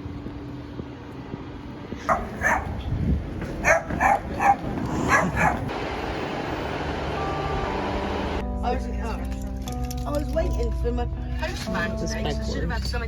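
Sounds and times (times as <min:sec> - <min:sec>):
dog barking: 0:02.1 - 0:02.8, 0:03.6 - 0:05.7.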